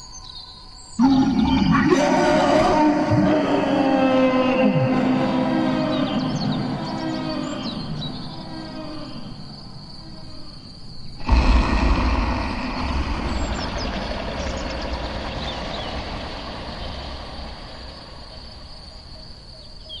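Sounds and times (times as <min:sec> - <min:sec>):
crickets chirring: 0:00.0 - 0:20.0
sudden deep rumble: 0:11.2 - 0:20.0.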